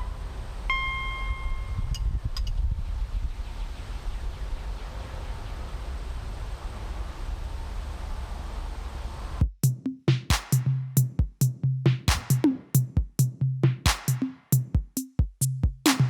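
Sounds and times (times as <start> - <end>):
steady noise hiss: 0.0 - 9.4
drum machine beat: 9.4 - 16.0.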